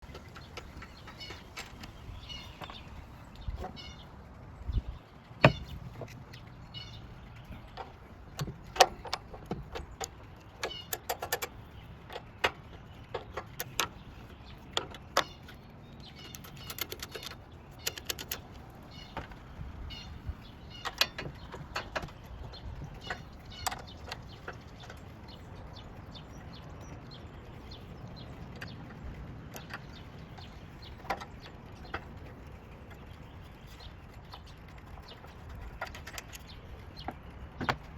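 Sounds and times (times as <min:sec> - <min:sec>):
sharp clicks and knocks: 0:07.4 - 0:19.5, 0:20.7 - 0:25.3, 0:25.9 - 0:37.9.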